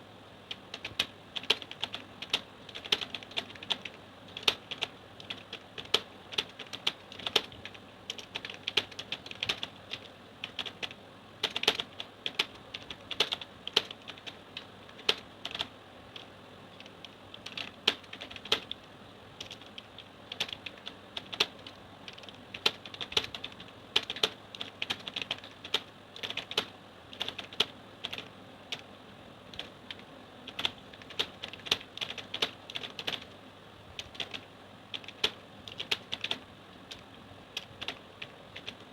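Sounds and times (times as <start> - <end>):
keyboard keys clicking: 0.5 - 18.8, 19.4 - 28.8, 29.5 - 33.3, 34.0 - 37.0, 37.6 - 38.9.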